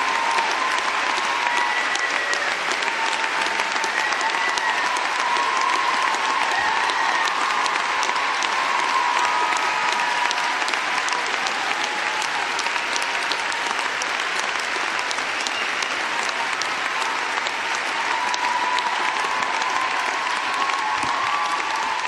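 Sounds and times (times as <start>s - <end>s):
crowd applauding: 0.0s - 22.0s.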